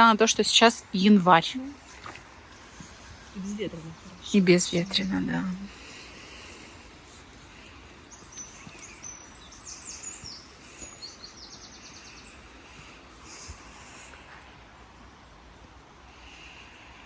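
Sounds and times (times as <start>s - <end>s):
background hiss: 0.0s - 17.0s
songbird singing: 7.4s - 14.3s.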